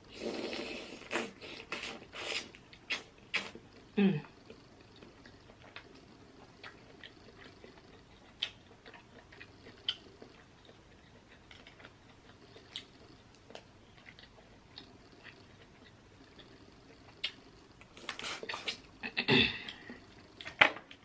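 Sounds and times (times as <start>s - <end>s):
low room hum: 0.0s - 21.0s
wet chewing clicks and smacks: 4.8s - 18.8s.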